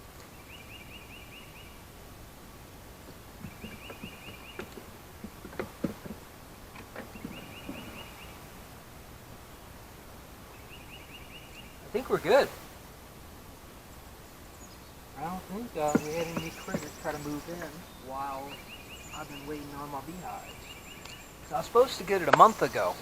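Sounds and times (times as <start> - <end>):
wooden frames knocking and rustling: 3.1 - 8.2, 15.2 - 17.8
bird high trill: 14.6 - 23.0.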